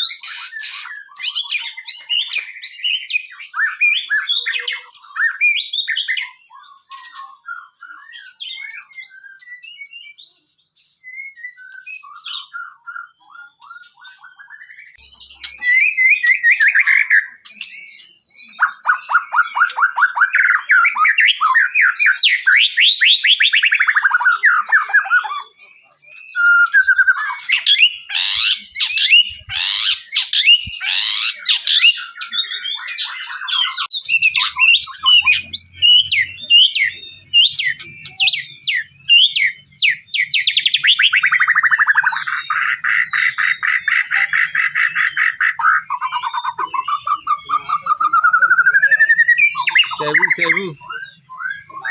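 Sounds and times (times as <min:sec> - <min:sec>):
bird singing whistled phrases: 0:00.0 - 0:51.9
bird fast trills: 0:26.9 - 0:32.0, 0:33.4 - 0:51.6.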